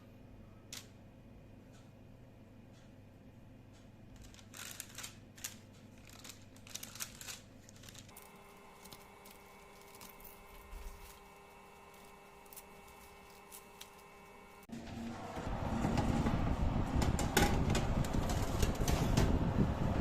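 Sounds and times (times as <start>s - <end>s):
crinkling and rustling: 4.1s - 14.7s.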